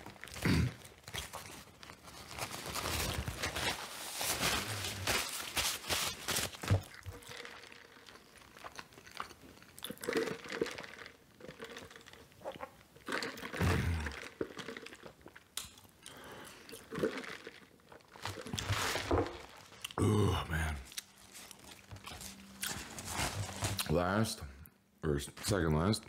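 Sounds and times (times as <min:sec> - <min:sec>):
wet chewing and smacking: 0:06.8 - 0:20.0, 0:20.9 - 0:22.9.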